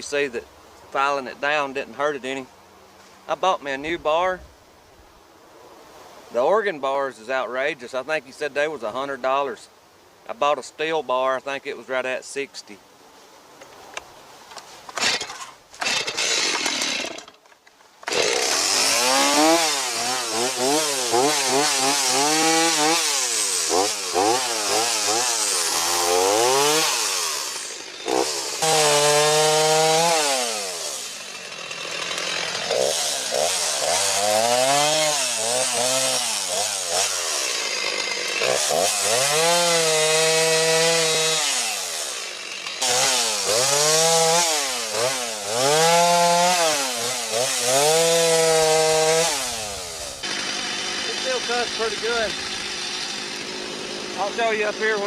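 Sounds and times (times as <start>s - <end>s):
chainsaw cutting wood: 14.5s - 55.0s.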